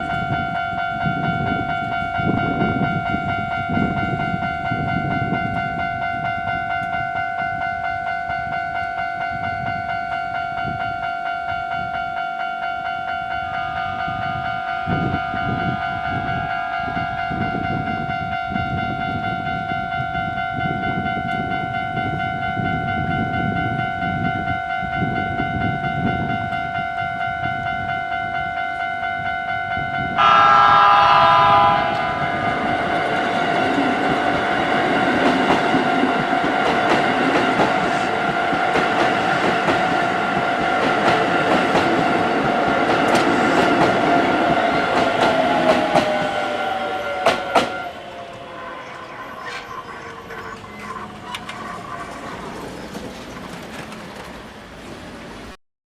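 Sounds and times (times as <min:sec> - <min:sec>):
level crossing alarm ringing: 0:00.0 - 0:53.2
train air horn blast: 0:13.1 - 0:20.7, 0:30.2 - 0:34.5, 0:44.5 - 0:52.7
train wheels clacking on rails: 0:30.2 - 0:55.2.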